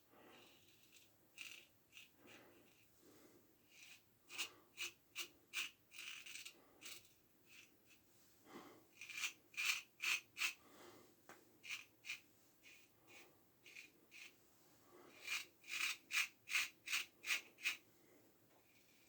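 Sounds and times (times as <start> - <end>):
razor scraping stubble: 11.6 - 14.3, 15.1 - 17.8.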